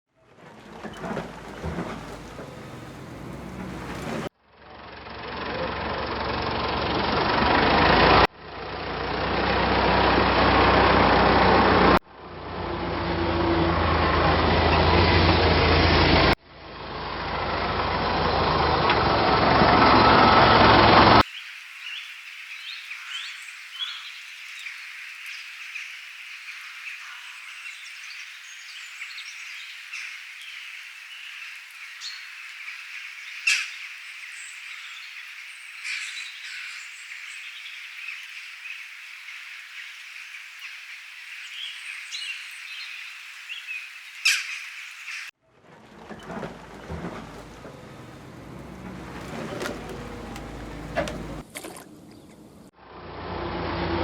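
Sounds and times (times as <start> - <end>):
heavy vehicle engine: 0.2 - 21.2, 45.4 - 54.0.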